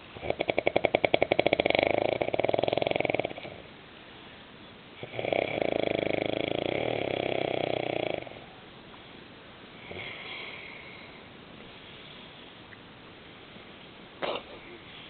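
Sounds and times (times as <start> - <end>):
man snoring: 0.2 - 3.6, 5.0 - 8.4, 9.8 - 11.0.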